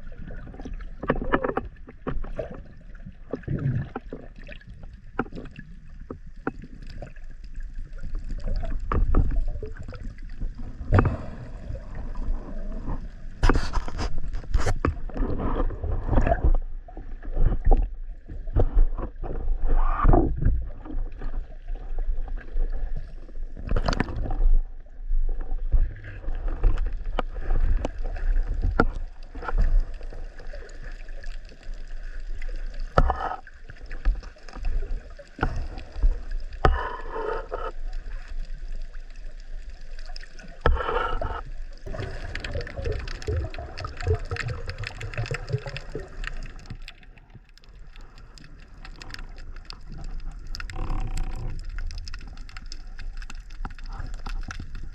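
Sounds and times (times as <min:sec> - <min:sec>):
sea water sloshing and gurgling: 0:00.0 - 0:54.9
splashes and knocks: 0:26.4 - 0:37.0, 0:41.8 - 0:54.9.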